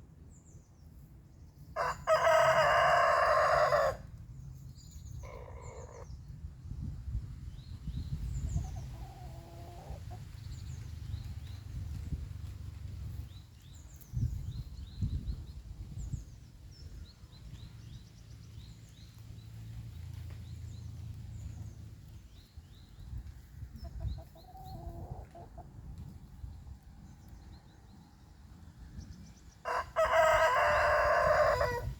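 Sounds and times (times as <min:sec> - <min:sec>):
rooster crowing: 0:01.8 - 0:04.0, 0:29.7 - 0:31.9
small birds chirping: 0:07.5 - 0:30.9.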